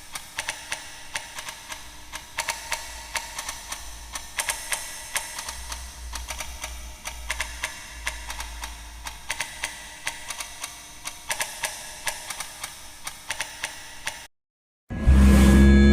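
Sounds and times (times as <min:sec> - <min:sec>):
clock ticking: 0:00.0 - 0:14.3
low hum: 0:14.9 - 0:15.9.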